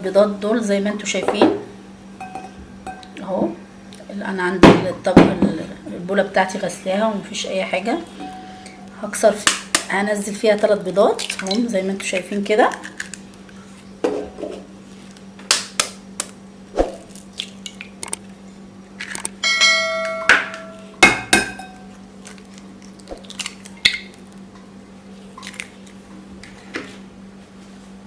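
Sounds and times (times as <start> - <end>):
bowl ringing: 2.2 - 3.2, 8.1 - 8.9, 19.4 - 22.0
eggs cracking against a bowl: 9.4 - 13.6, 21.4 - 24.6, 25.4 - 26.6.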